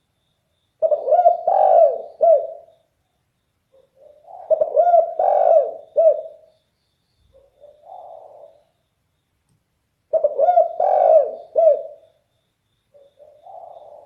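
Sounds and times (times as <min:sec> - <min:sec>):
dove cooing: 0:00.8 - 0:02.8, 0:03.7 - 0:06.5, 0:07.3 - 0:08.7, 0:10.1 - 0:12.2, 0:12.9 - 0:14.0.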